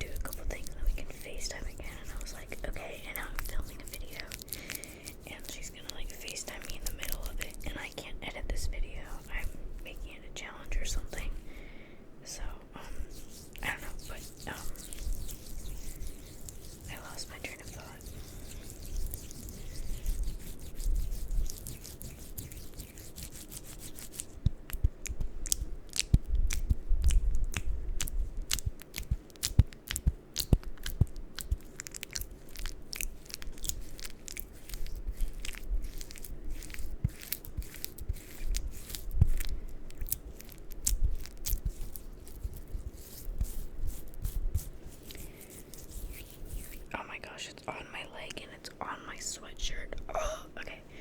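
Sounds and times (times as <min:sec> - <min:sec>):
crisp clicks and crackles: 0:13.6 - 0:43.2.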